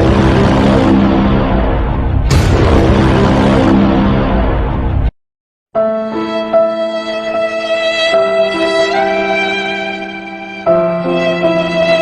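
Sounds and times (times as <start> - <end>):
dark dramatic music: 0.0 - 5.1.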